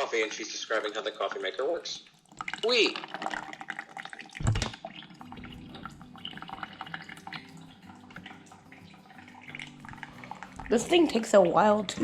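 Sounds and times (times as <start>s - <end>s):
coffee dripping into cup: 1.8s - 12.0s
thump: 4.4s - 4.7s.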